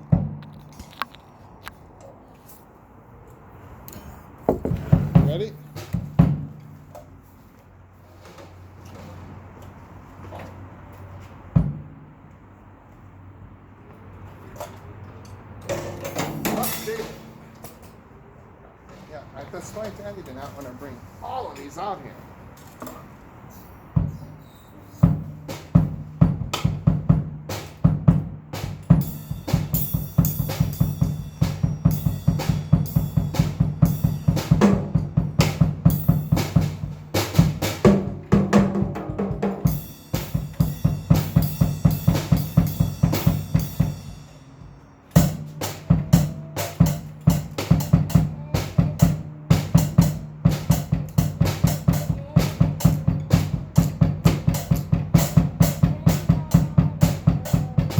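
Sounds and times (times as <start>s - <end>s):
drum kit fast beat: 4.7s - 6.6s, 25.0s - 57.9s.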